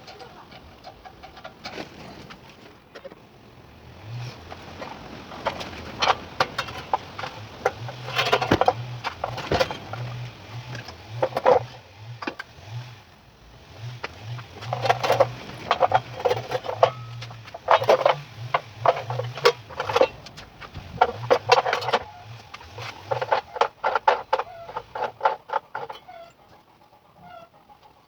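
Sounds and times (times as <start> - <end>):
tool rapid clicks and knocks: 5.4 - 12.5.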